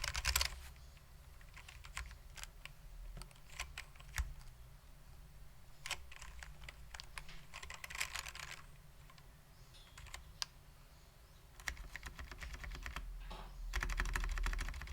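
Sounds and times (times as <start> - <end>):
mechanical keyboard typing: 0.0 - 0.6, 1.4 - 4.5, 5.8 - 9.3, 9.9 - 10.5, 11.6 - 13.1, 13.7 - 14.9.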